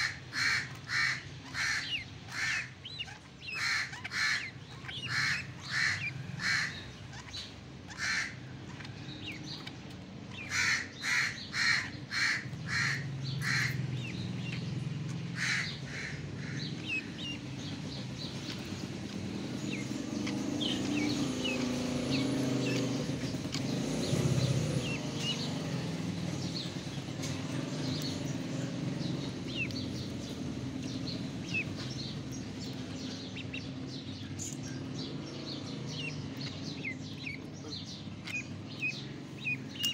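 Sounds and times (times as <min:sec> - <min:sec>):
ducklings peeping: 0:00.0 - 0:39.9
loud harsh bird calls: 0:00.0 - 0:39.9.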